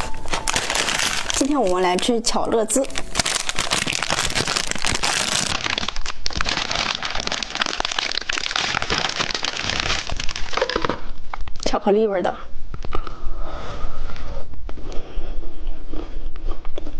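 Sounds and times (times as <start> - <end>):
plastic wrapper crinkling: 0.0 - 11.6.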